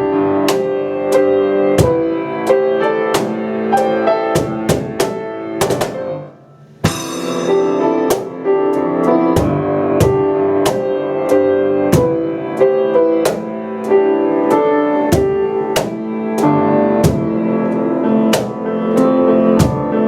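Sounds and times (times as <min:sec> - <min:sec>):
piano chords and melody: 0:00.0 - 0:20.0
percussion hits: 0:00.5 - 0:12.4, 0:15.1 - 0:17.5.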